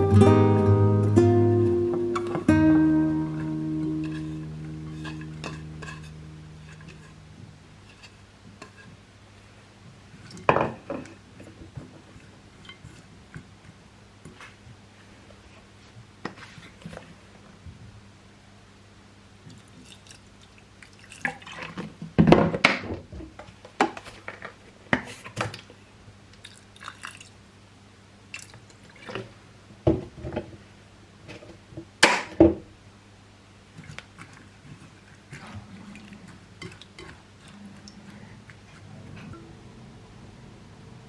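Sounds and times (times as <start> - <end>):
dishes and utensils clinking: 1.8 - 7.2
faint low hum: 35.4 - 41.0.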